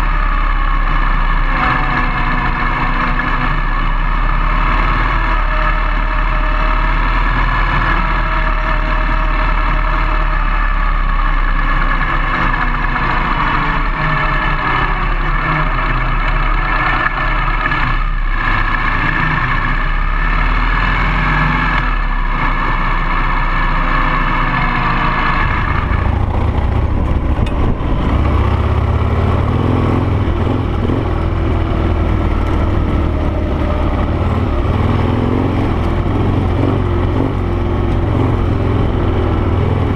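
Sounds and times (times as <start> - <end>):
motorcycle v-twin engine running: 22.1 - 39.9.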